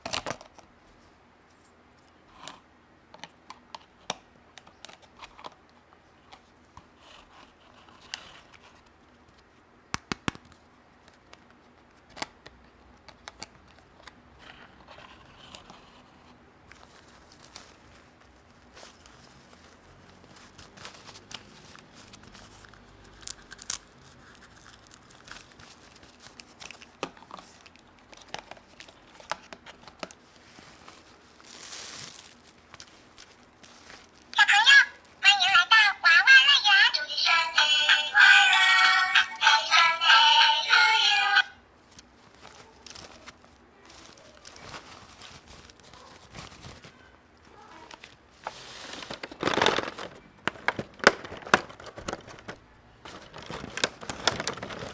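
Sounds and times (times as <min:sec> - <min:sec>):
packaging crinkling and tearing: 0:16.7 - 0:34.4, 0:41.8 - 0:47.1, 0:47.8 - 0:54.9.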